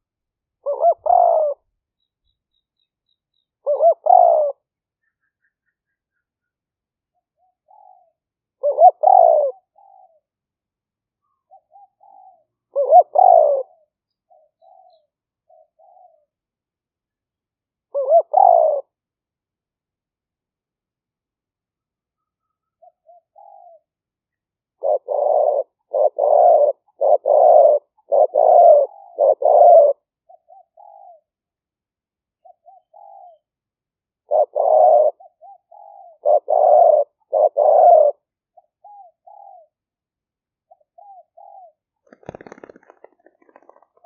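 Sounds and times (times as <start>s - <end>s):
dove cooing: 0.6s - 1.7s, 3.6s - 4.6s, 7.4s - 10.2s, 11.5s - 16.3s, 17.9s - 19.0s, 22.8s - 23.9s, 24.8s - 31.3s, 32.4s - 33.5s, 34.2s - 39.8s, 40.7s - 44.0s.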